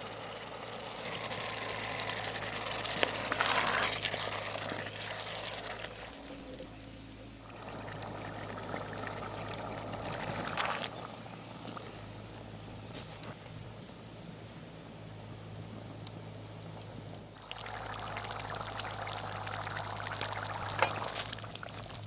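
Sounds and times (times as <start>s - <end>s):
liquid pouring and trickling: 0.1s - 6.7s, 7.4s - 11.9s, 17.4s - 22.0s.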